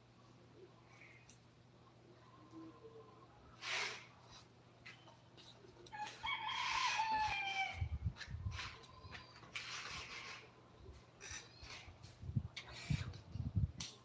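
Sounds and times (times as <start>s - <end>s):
rooster crowing: 5.9s - 7.9s.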